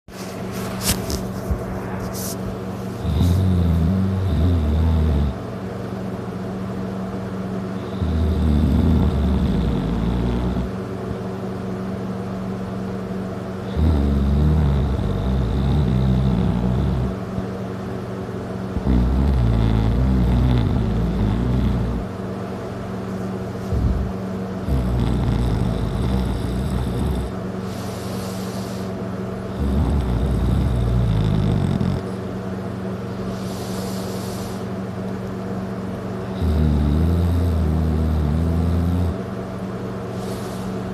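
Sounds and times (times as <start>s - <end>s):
background hum: 0.0s - 40.9s
man snoring loudly: 3.0s - 5.4s, 7.8s - 10.8s, 13.6s - 17.4s, 18.8s - 22.1s, 23.7s - 28.9s, 29.5s - 32.1s, 36.2s - 39.2s.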